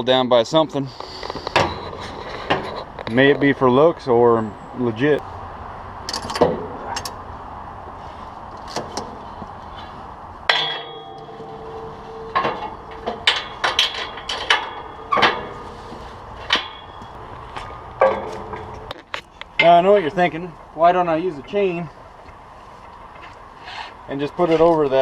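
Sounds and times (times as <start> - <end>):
low steady hum: 4.0 - 23.3
ratchet strap clanking and clicking: 10.5 - 17.2.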